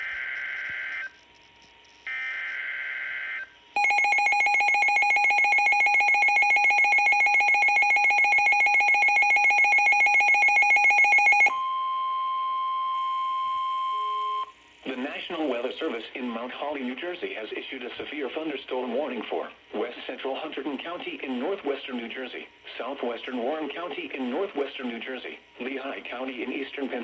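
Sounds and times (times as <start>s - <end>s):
steady warning alarm tone: 0.0s - 1.2s, 2.0s - 14.5s
screechy digital data bursts: 0.0s - 11.5s
rapidly pulsing alert beep: 3.8s - 11.5s.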